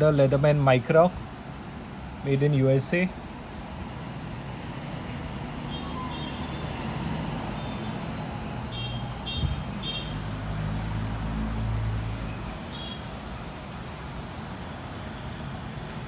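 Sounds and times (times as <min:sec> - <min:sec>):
road traffic rumble: 0:00.0 - 0:16.0
vehicle passing: 0:03.8 - 0:16.0.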